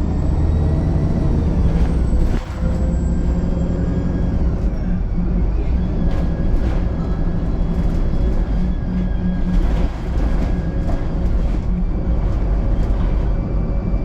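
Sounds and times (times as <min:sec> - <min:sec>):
bus engine drone: 0:00.0 - 0:14.0
light rattles: 0:05.6 - 0:14.0.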